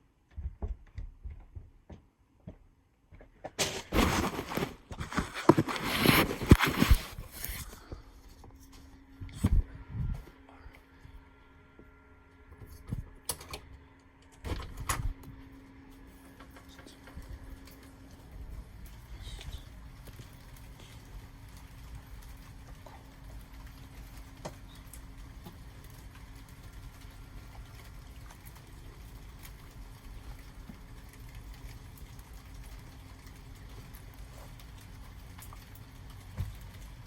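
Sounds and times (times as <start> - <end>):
steady low rumble: 6.5 - 13.2
rain dripping and pattering: 14.4 - 37.0.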